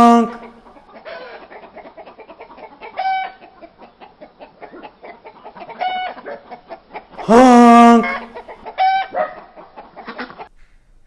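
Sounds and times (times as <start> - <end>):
hens clucking: 0.0 - 10.6
hen pitched calls: 2.9 - 6.6, 7.2 - 10.4.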